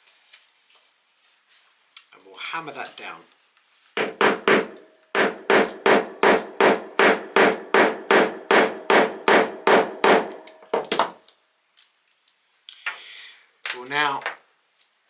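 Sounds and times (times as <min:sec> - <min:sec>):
hammer striking metal tool: 0:04.0 - 0:11.0.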